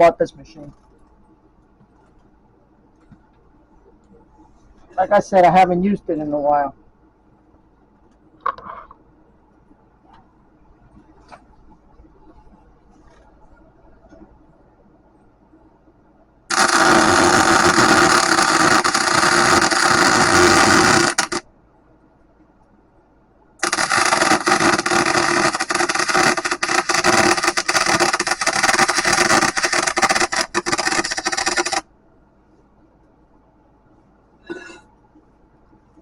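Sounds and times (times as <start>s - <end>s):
electric arc welding crackling hiss: 16.5s - 21.4s, 23.6s - 31.9s.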